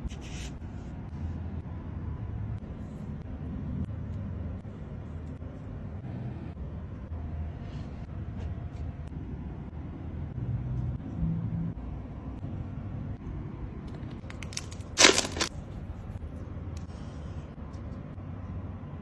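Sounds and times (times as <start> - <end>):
packaging crackle: 14.2 - 15.5.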